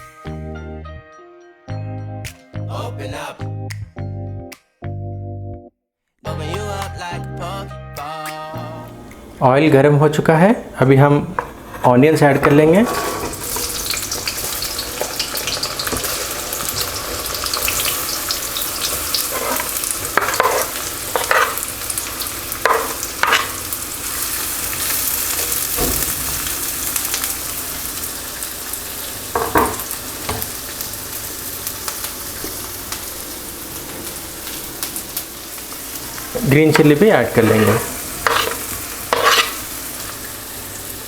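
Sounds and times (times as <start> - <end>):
onions sizzling in oil: 12.8 - 41.0
utensil scraping and tapping pan: 19.3 - 21.6, 36.7 - 39.6.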